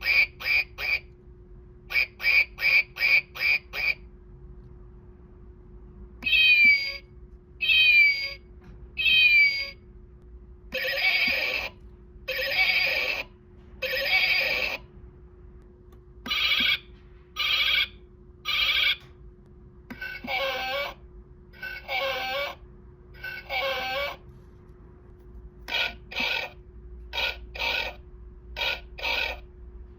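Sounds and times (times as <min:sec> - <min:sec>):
recorded animal calls: 0:20.0 - 0:21.0, 0:23.2 - 0:24.2, 0:25.7 - 0:28.0, 0:28.6 - 0:29.5.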